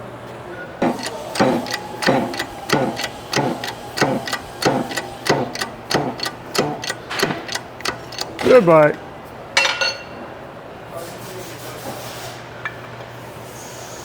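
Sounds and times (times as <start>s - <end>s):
shop press clicking: 0.8s - 9.0s.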